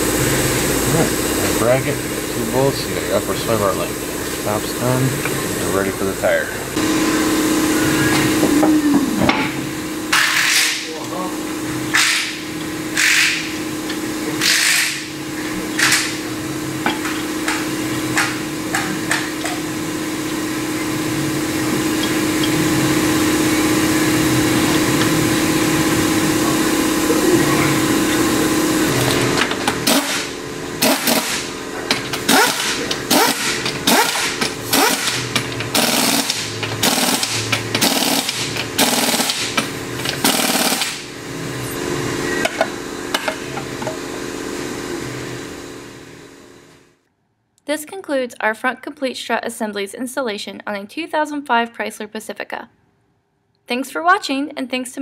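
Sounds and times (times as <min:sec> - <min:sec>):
steady mechanical hum: 0:00.0 - 0:55.0
power tool bursts: 0:11.9 - 0:13.8, 0:14.4 - 0:16.3, 0:27.8 - 0:41.2.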